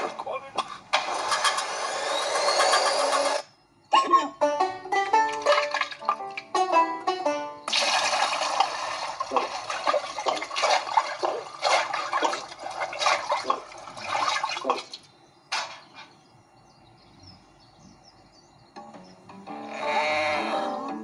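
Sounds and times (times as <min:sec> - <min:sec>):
water rushing and splashing: 0:07.7 - 0:15.0.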